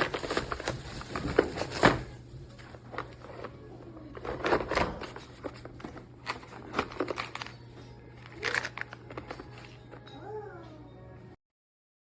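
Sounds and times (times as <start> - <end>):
objects rustling and clicking: 0.0 - 10.2.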